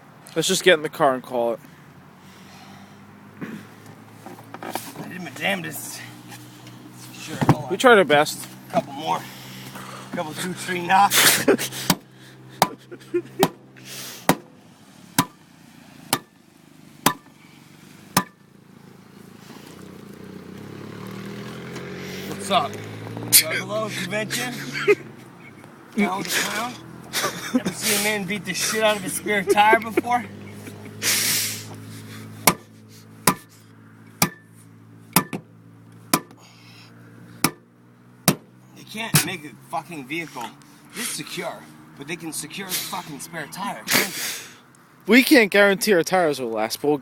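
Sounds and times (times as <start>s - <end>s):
sharp knocks on tire: 7.4s - 7.7s, 11.8s - 12.8s, 13.4s - 13.6s, 14.2s - 14.5s, 15.2s - 15.4s, 16.1s - 16.4s, 17.0s - 17.4s, 18.1s - 18.5s, 32.4s - 33.5s, 34.2s - 34.5s, 35.1s - 35.5s, 36.1s - 36.4s, 37.4s - 38.6s.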